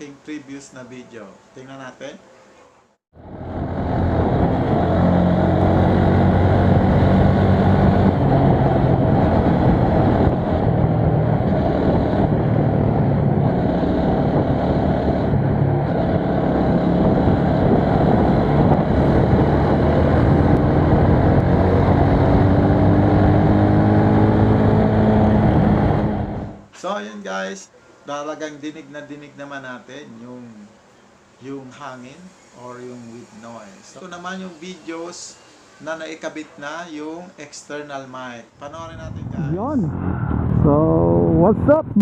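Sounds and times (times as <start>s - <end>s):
wind buffeting microphone: 3.2s - 26.4s, 38.7s - 42.0s
motorcycle engine hum: 3.2s - 26.6s.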